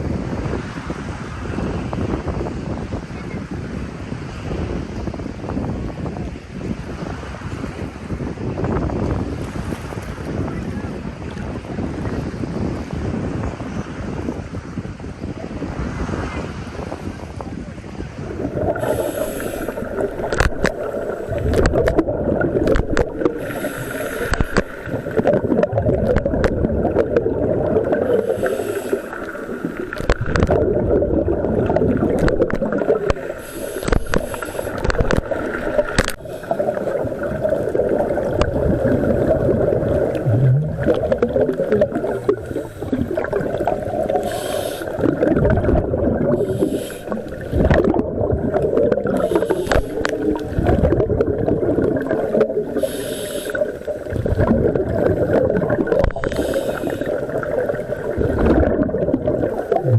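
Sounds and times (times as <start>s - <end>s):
underwater bubbling and gurgling: 0.0s - 59.9s
regulator hiss: 18.8s - 20.0s, 23.2s - 25.0s, 28.1s - 29.8s, 33.2s - 34.8s, 44.2s - 45.0s, 46.4s - 47.2s, 49.2s - 50.1s, 52.8s - 53.6s, 56.3s - 57.2s.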